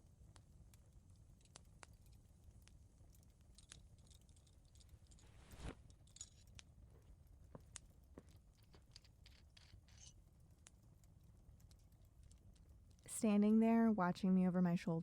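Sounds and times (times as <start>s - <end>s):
wood fire crackling: 0.0s - 14.1s.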